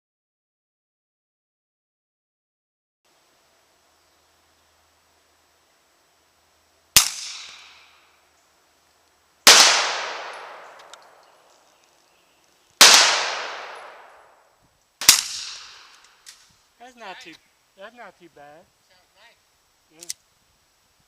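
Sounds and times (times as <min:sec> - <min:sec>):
suppressed pistol shots: 0:07.0 - 0:07.8, 0:09.5 - 0:11.2, 0:12.8 - 0:14.3, 0:15.0 - 0:16.1.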